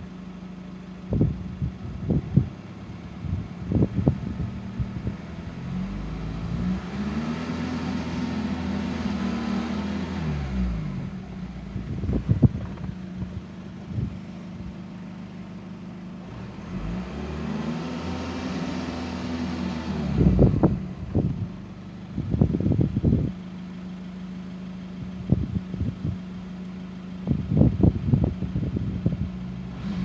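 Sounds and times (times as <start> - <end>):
diesel engine revving: 3.1 - 15.0, 16.1 - 23.3, 27.3 - 30.0.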